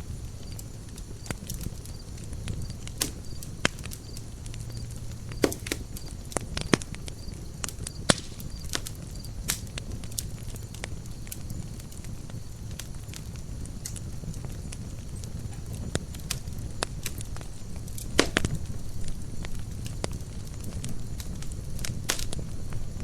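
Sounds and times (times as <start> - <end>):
campfire crackling and popping: 0.0 - 23.0.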